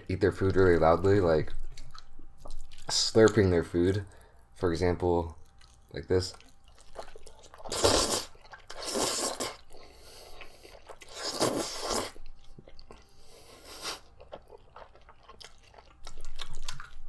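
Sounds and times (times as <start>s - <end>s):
quiet chewing: 0.4s - 4.6s, 5.2s - 17.0s
person slurping noodles: 7.7s - 9.6s, 11.1s - 12.2s.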